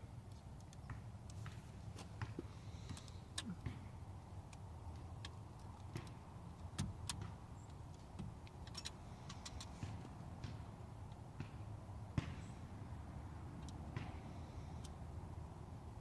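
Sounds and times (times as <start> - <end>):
light clicks and taps of small parts: 0.2 - 3.8, 4.5 - 11.6, 13.5 - 15.0.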